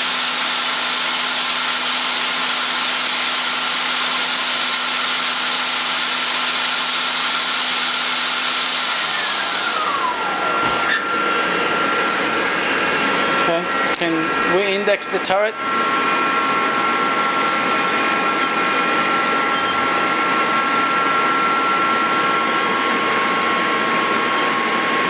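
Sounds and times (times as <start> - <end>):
lathe spindle hum and whine: 0.0 - 25.0.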